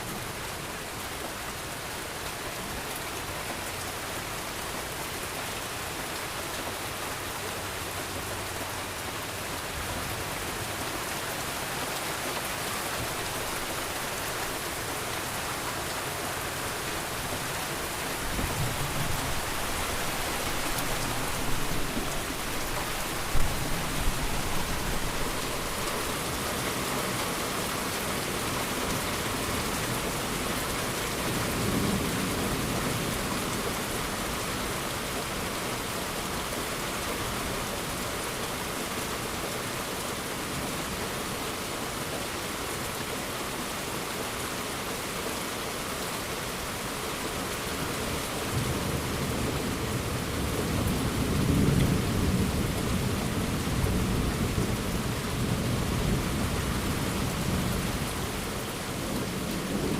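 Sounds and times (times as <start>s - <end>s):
heavy rain hissing: 6.8s - 35.1s.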